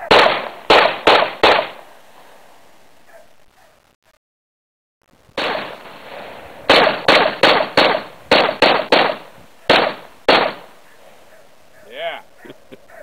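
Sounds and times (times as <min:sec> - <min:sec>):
gunshots: 0:00.0 - 0:01.9, 0:05.4 - 0:10.8.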